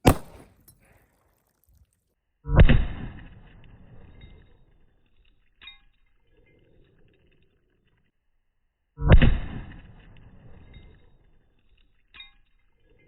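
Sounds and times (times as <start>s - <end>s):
rifle shot echoing: 0.0s - 0.8s
faint metallic clink: 4.1s - 7.5s, 10.6s - 13.0s.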